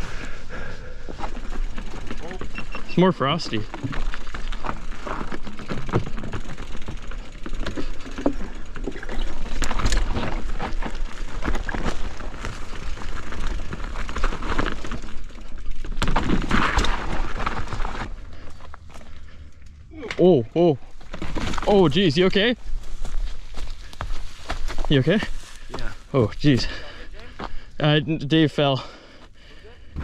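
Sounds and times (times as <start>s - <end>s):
tyres crunching over dirt: 0.6s - 19.6s, 20.6s - 27.8s
bike knocks and rattles: 1.0s - 19.2s, 20.9s - 22.1s.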